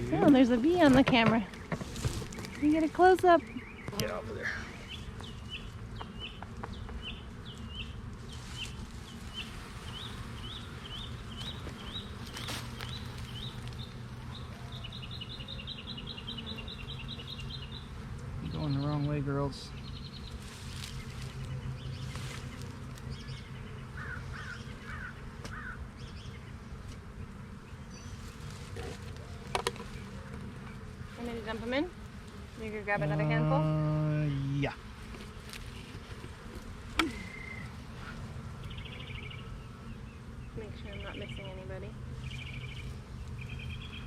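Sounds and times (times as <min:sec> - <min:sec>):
honeybees buzzing: 0:00.0 - 0:44.0
bird chirping: 0:02.4 - 0:26.6, 0:38.6 - 0:41.6, 0:42.2 - 0:44.0.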